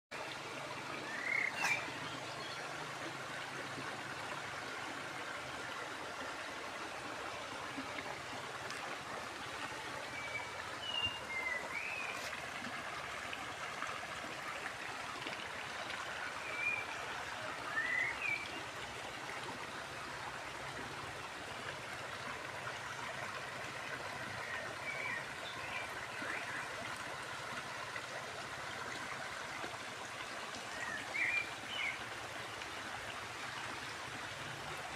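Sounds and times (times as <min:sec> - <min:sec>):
stream rushing: 0:00.2 - 0:34.9
birds chirping: 0:01.0 - 0:02.6.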